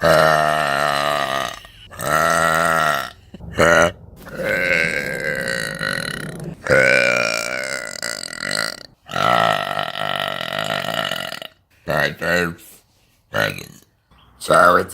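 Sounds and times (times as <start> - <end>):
woman belching: 0.0 - 11.6.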